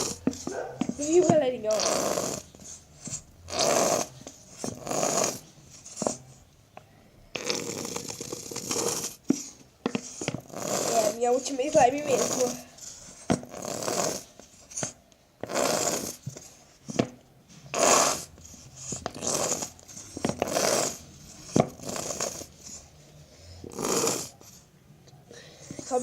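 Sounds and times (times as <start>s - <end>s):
glue bottle spluttering rasp: 7.4s - 17.0s.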